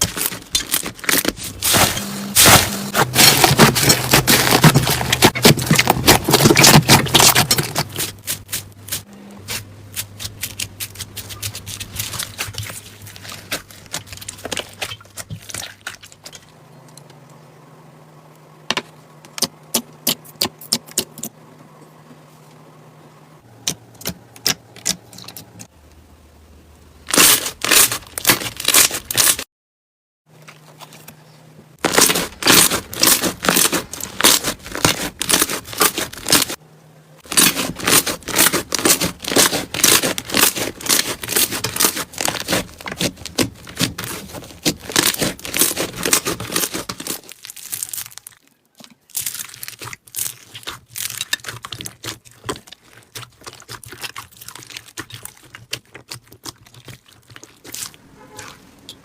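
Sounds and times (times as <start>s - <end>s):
slime crackling and popping: 0.0s - 16.4s, 27.0s - 29.4s, 31.8s - 36.6s, 37.3s - 58.0s.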